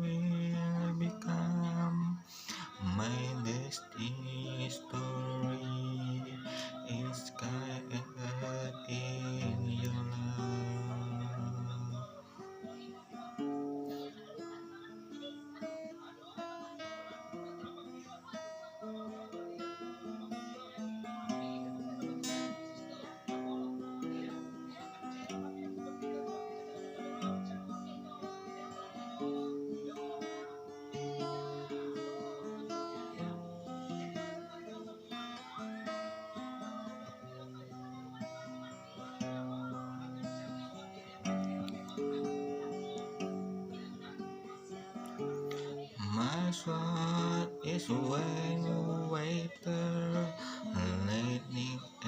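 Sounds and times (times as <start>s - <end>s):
acoustic guitar chords: 0.0s - 52.0s.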